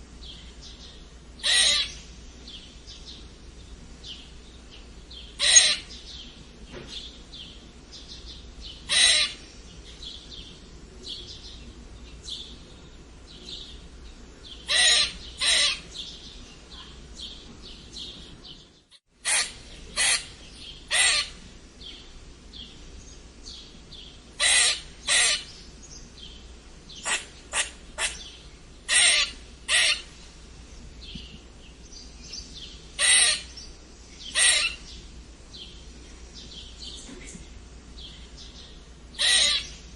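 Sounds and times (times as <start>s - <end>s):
squirrel squeaking: 1.4s - 2.0s, 5.4s - 5.9s, 8.9s - 9.4s, 14.7s - 15.9s, 19.2s - 20.3s, 20.9s - 21.4s, 24.4s - 25.5s, 28.9s - 30.1s, 33.0s - 33.6s, 34.3s - 34.9s, 39.2s - 39.7s.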